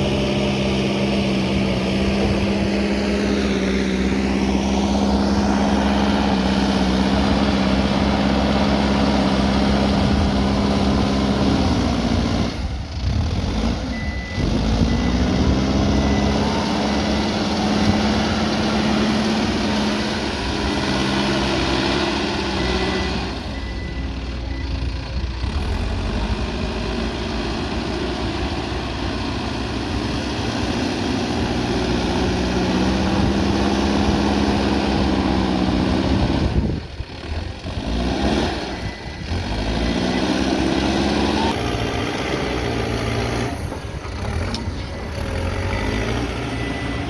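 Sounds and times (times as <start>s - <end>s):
diesel engine under load: 0.0s - 47.0s
reversing alarm tone: 13.9s - 24.6s, 38.2s - 47.0s.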